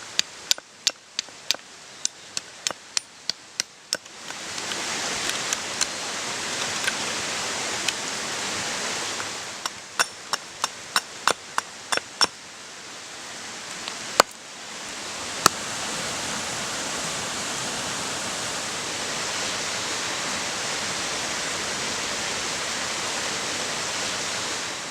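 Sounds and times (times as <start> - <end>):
running water rushing: 0.0 - 24.9.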